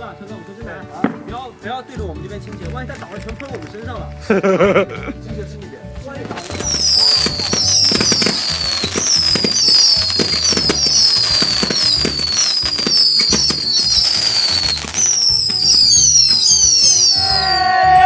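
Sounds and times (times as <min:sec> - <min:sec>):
crackling pops: 0:01.0 - 0:04.3, 0:06.1 - 0:17.6
firework whistles falling in pitch: 0:06.4 - 0:18.0.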